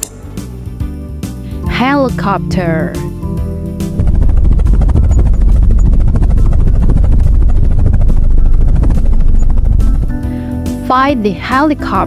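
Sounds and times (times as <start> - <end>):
helicopter engine: 1.8 - 10.8
helicopter rotor chopping: 2.1 - 11.0.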